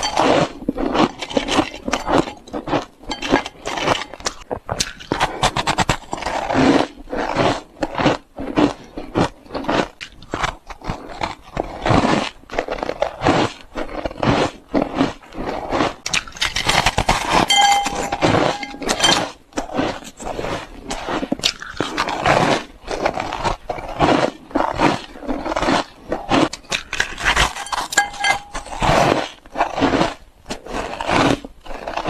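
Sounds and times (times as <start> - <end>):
ice being chewed: 0.0 - 32.0.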